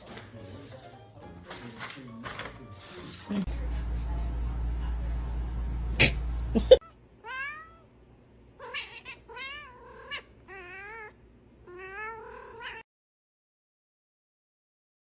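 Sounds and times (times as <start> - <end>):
cat meowing: 7.2 - 7.9, 8.6 - 12.8.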